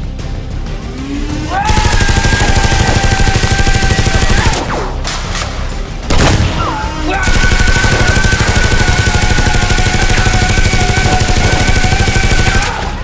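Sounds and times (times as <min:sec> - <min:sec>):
rapid machine-gun fire: 0:01.7 - 0:04.8, 0:07.2 - 0:13.0.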